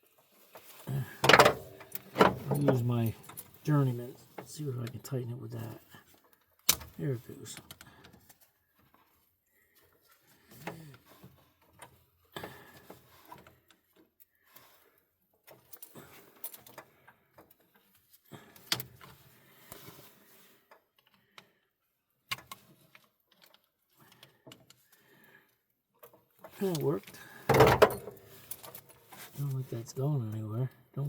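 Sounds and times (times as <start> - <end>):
hand tool clinking and scraping metal: 0.4 - 4.9, 26.4 - 29.7.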